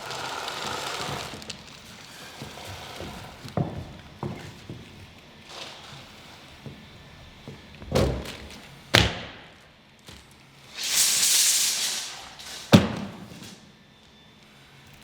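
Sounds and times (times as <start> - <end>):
rushing hiss: 10.7 - 12.7.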